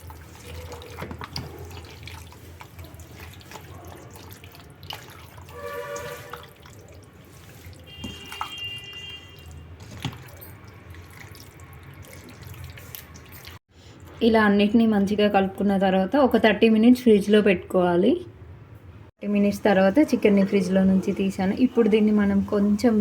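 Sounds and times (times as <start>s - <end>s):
wet squelching of meat mixed by hand: 0.0s - 13.6s.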